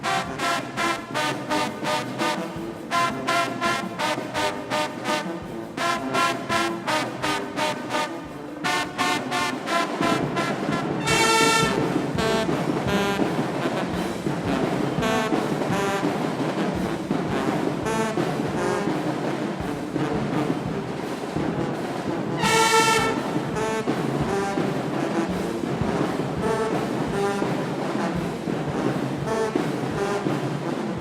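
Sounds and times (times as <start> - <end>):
marching band brass playing: 0.0 - 31.0
sustained brass blasts: 9.0 - 12.5, 22.4 - 23.8.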